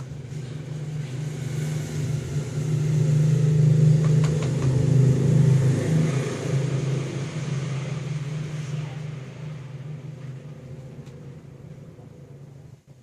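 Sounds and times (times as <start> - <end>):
motor engine humming: 0.0 - 13.0.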